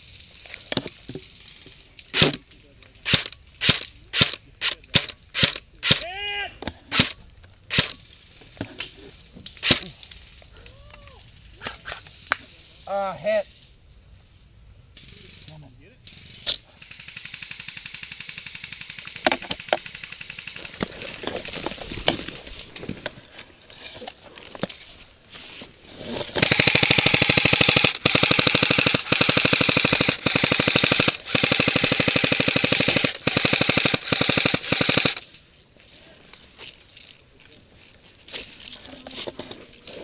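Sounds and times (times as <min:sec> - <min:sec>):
airsoft gun full auto fire: 0:03.1 - 0:06.0, 0:06.9 - 0:08.0, 0:16.8 - 0:20.6, 0:26.4 - 0:35.2
distant airsoft fire: 0:26.4 - 0:35.2.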